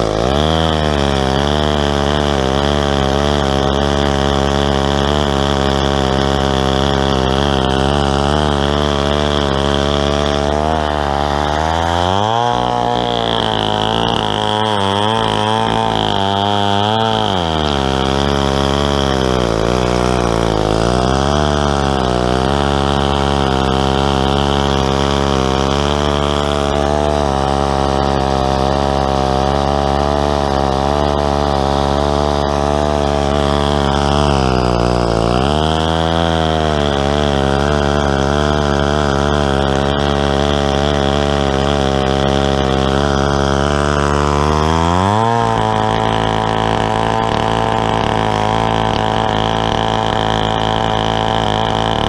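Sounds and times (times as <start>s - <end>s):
chainsaw cutting a log: 0.0s - 52.0s.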